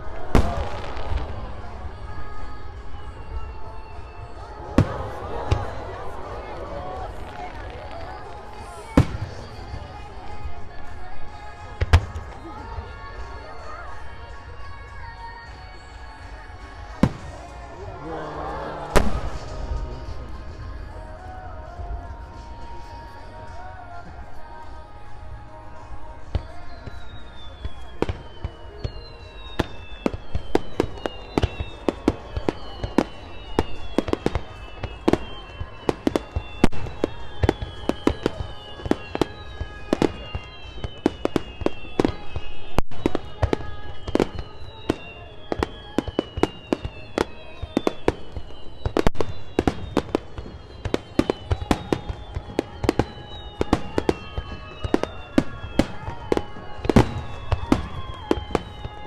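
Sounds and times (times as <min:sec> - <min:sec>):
fireworks bangs: 0:00.0 - 0:59.0
fireworks whistles falling in pitch: 0:00.0 - 0:59.0.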